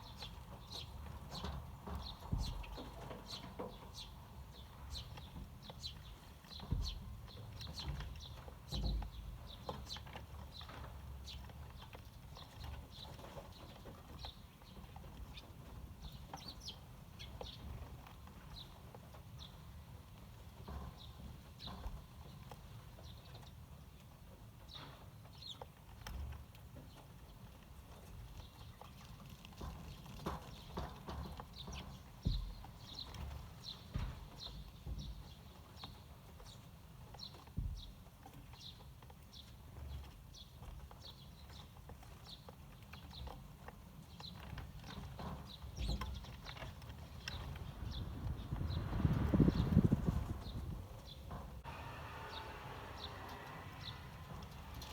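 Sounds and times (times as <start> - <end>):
sparrows chirping: 0.0 - 19.8, 20.6 - 23.5, 28.2 - 51.7, 52.4 - 54.9
low rumble: 47.4 - 54.8.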